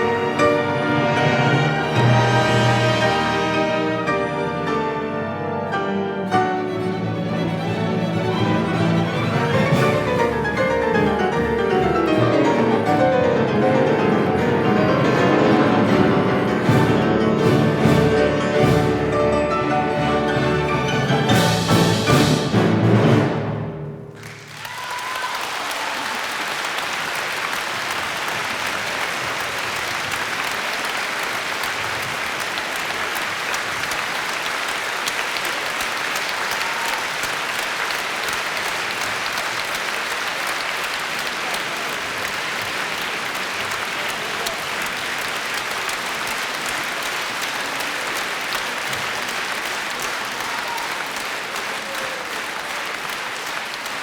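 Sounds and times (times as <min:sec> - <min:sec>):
audience applause: 0:00.0 - 0:23.0, 0:24.1 - 0:54.0
symphony orchestra playing: 0:00.0 - 0:24.5.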